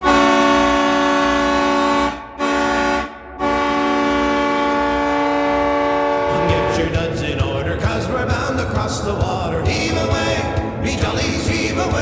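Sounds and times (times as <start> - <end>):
air horn blasts: 0.0 - 7.0.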